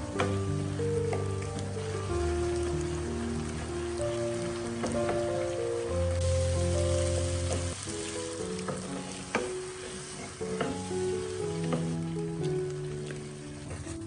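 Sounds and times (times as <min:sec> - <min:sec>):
background music of slow held notes: 0:00.0 - 0:14.0
food sizzling in a pan: 0:00.1 - 0:14.0
utensil clicking against pan: 0:08.6 - 0:13.2.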